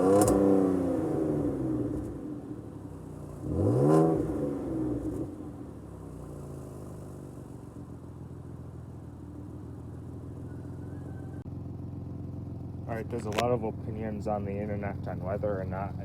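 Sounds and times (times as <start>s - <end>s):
car engine revving and idling: 0.0s - 16.0s.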